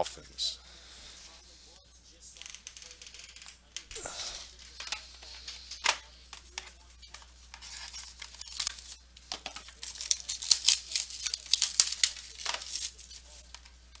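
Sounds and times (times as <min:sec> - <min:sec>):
wrapper being torn and crinkled: 0:06.4 - 0:14.0.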